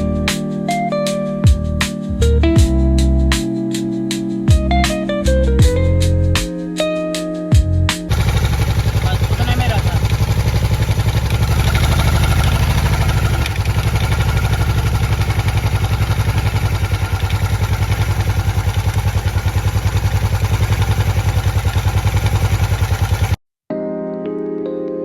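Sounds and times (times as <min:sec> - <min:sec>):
motorcycle engine idling: 0:08.1 - 0:23.4.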